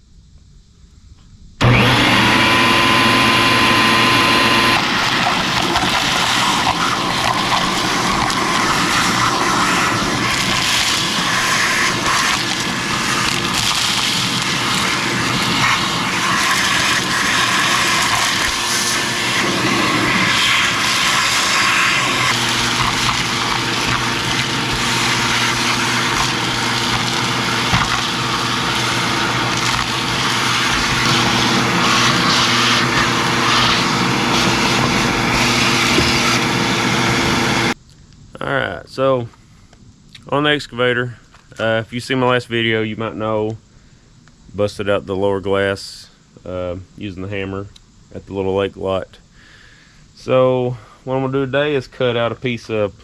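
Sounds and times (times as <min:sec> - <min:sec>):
hydraulic mechanical noise: 0:01.6 - 0:37.8
diesel engine running: 0:11.9 - 0:37.8.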